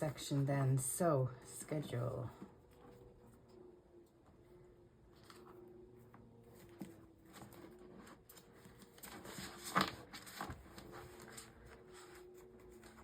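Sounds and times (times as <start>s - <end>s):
paper rustling: 6.5s - 13.0s.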